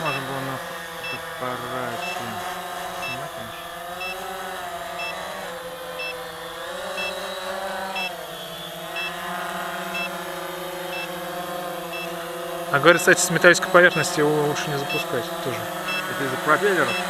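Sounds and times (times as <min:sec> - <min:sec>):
short electronic beeps: 0:00.0 - 0:00.4, 0:01.0 - 0:02.4, 0:03.0 - 0:04.2, 0:05.0 - 0:05.2, 0:06.0 - 0:06.2, 0:07.0 - 0:09.2, 0:09.9 - 0:10.2, 0:11.9 - 0:12.2, 0:13.9 - 0:17.0
quadcopter propellers buzzing: 0:00.0 - 0:17.0.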